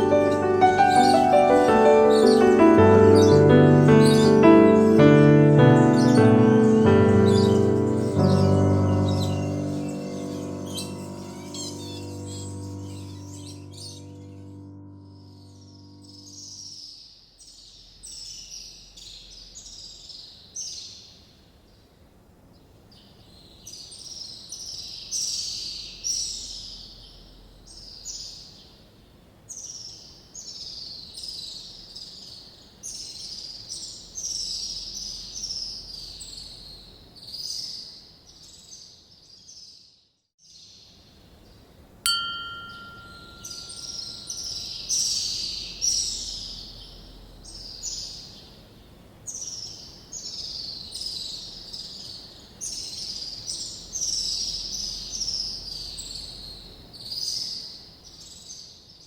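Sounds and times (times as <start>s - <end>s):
small birds chirping: 0.0s - 59.0s
clear pitched note ringing: 42.1s - 44.8s.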